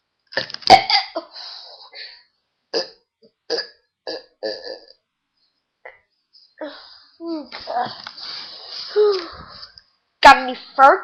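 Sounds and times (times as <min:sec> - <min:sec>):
person burping: 0:02.7 - 0:05.0.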